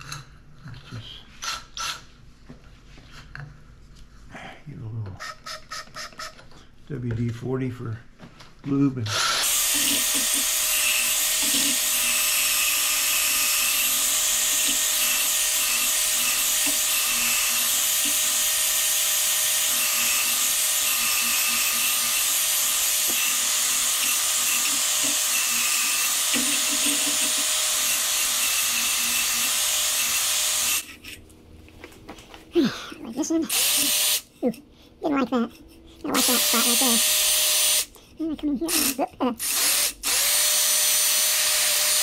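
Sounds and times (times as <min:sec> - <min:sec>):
electric drill whirring grind: 0:09.1 - 0:30.9, 0:33.5 - 0:34.3, 0:36.2 - 0:37.9, 0:38.7 - 0:42.0.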